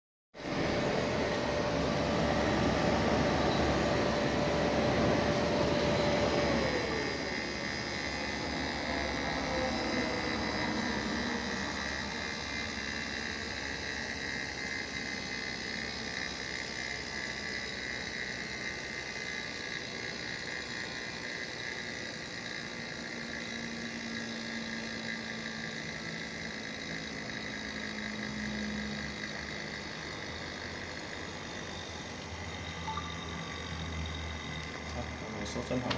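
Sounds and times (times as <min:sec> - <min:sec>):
dehumidifier compressor whine: 0:00.4 - 0:35.9
steady whir: 0:00.4 - 0:35.9.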